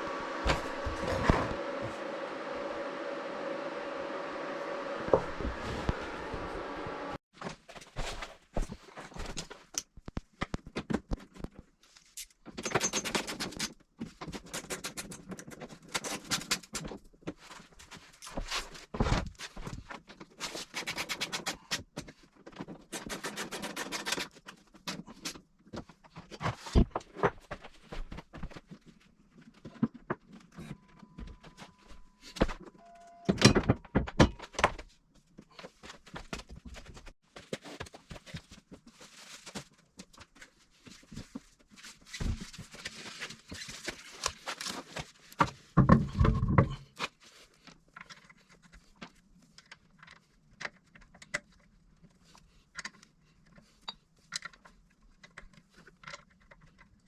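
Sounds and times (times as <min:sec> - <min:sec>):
tools knocking and clattering: 0:12.5 - 0:13.5, 0:45.8 - 0:46.9
short steady tone: 0:30.6 - 0:33.7.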